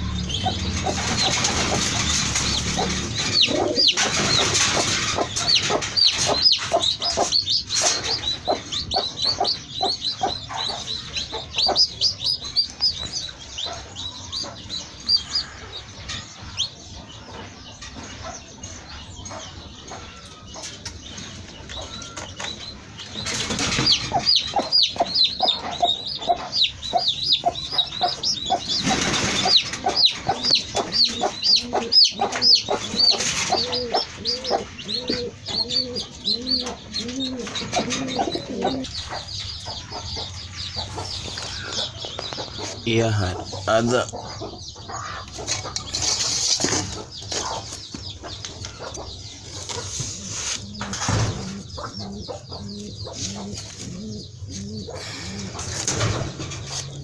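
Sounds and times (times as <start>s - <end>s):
high peeping chirps: 0.0s - 57.0s
low bird calls: 0.0s - 57.0s
wing flapping: 0.4s - 6.7s, 28.6s - 31.1s.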